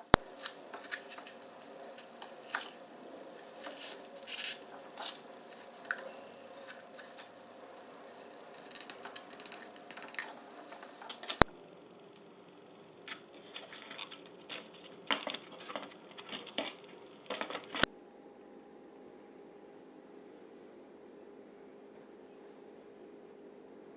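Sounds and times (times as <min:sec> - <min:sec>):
foam being snipped and scraped: 0:00.1 - 0:07.4.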